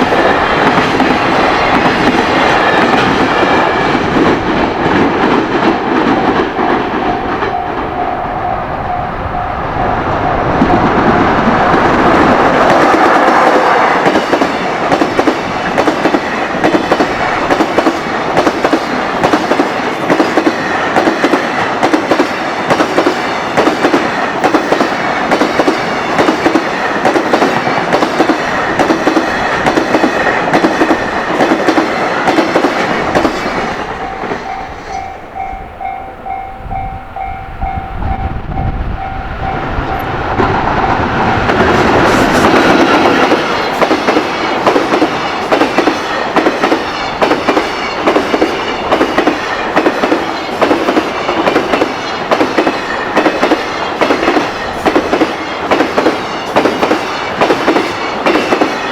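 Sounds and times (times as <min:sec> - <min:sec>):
level-crossing bell dinging: 0:06.6 - 0:10.6, 0:33.7 - 0:41.6.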